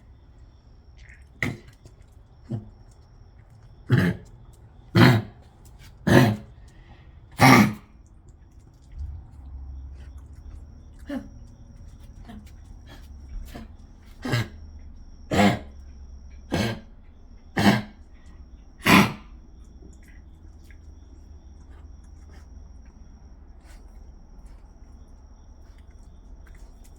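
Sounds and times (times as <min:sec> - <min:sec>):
harsh coughs: 0:05.0 - 0:05.4, 0:07.4 - 0:07.8, 0:14.2 - 0:14.6, 0:15.3 - 0:15.7, 0:16.5 - 0:16.9, 0:17.6 - 0:18.0, 0:18.8 - 0:19.3.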